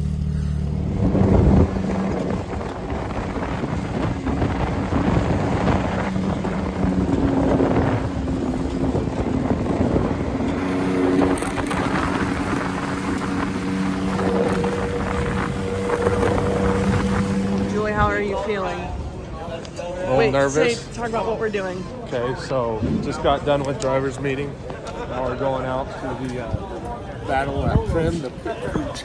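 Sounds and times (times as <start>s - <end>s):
vehicle engine running: 0.0s - 18.6s
wind buffeting microphone: 0.0s - 20.9s, 22.2s - 24.8s, 25.7s - 29.0s.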